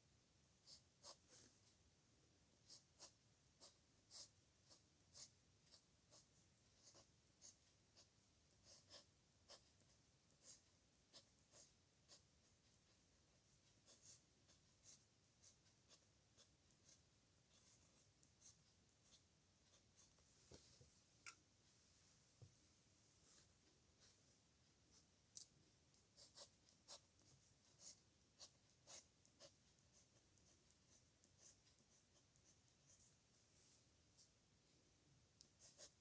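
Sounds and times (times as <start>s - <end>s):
pen scratching on paper: 0.6s - 1.6s, 2.6s - 20.2s, 26.1s - 34.3s, 35.5s - 36.0s.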